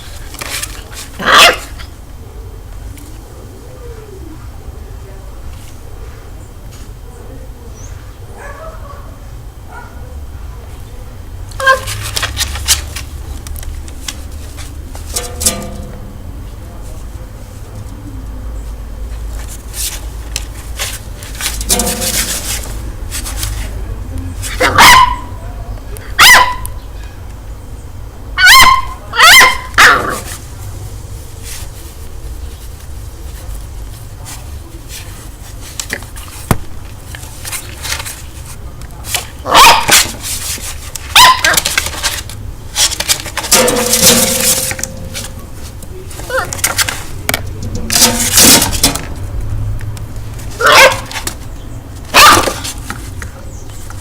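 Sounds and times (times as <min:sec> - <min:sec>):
scraping and rubbing: 0:00.0 - 0:01.9, 0:11.6 - 0:17.7, 0:19.1 - 0:25.0, 0:30.0 - 0:49.5, 0:50.2 - 0:54.0
puppy barking: 0:01.2 - 0:01.8, 0:08.3 - 0:10.1, 0:11.6 - 0:11.9, 0:24.6 - 0:25.4, 0:26.2 - 0:26.8, 0:28.4 - 0:30.3, 0:39.4 - 0:40.0, 0:41.1 - 0:41.7, 0:50.6 - 0:51.2, 0:52.1 - 0:52.6.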